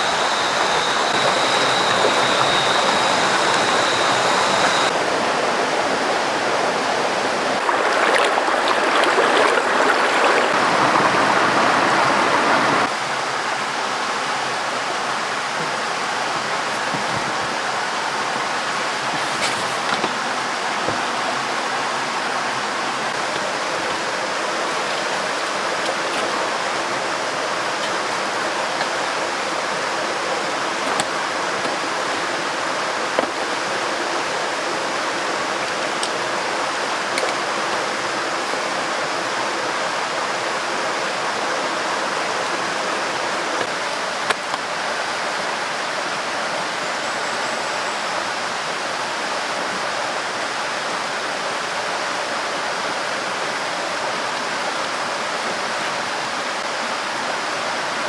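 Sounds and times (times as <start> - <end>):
river rushing: 0.0 - 19.2, 19.8 - 46.9.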